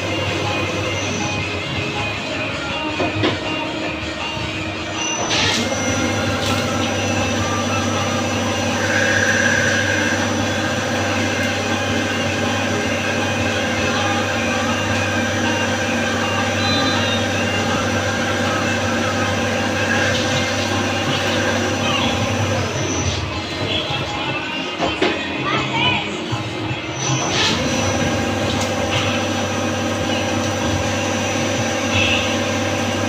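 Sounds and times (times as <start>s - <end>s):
lathe running with whine: 0.0s - 24.8s, 26.4s - 33.0s.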